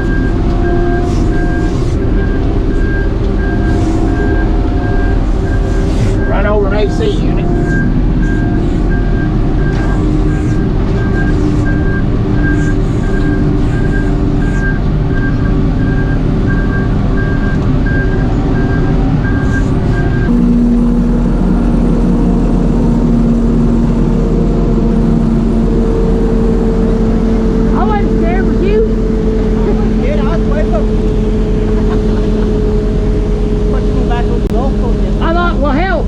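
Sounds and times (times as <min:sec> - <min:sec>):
high reverse alarm beeps: 0:00.0 - 0:20.4
diesel engine running: 0:00.0 - 0:36.0.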